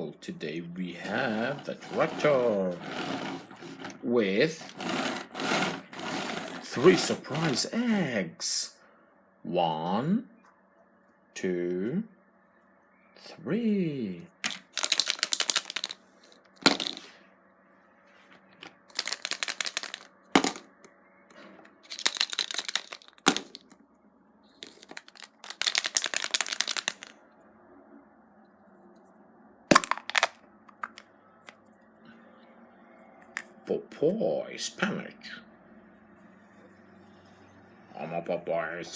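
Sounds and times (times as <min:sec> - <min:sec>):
foil wrapper crinkling and tearing: 0:21.9 - 0:23.2.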